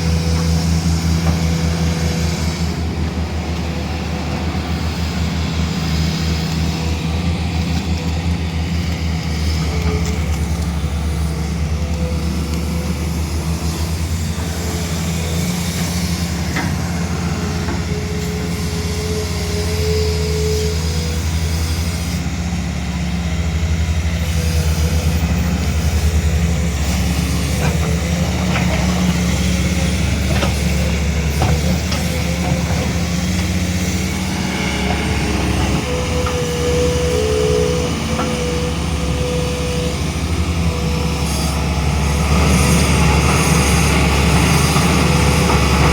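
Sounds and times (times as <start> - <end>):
excavator diesel engine running: 0.0 - 45.9
high-pitched whine: 33.9 - 45.9.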